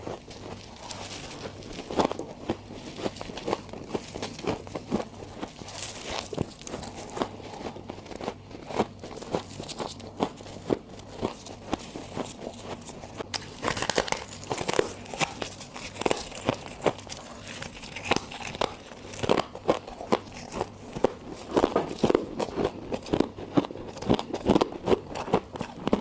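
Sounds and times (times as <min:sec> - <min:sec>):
frost being crunched: 0:11.2 - 0:22.2.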